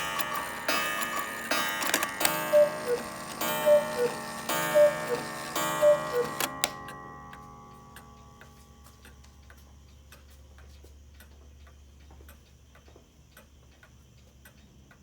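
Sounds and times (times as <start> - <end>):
struck ringing tone: 0.0 - 8.4
clock ticking faintly: 0.0 - 15.0.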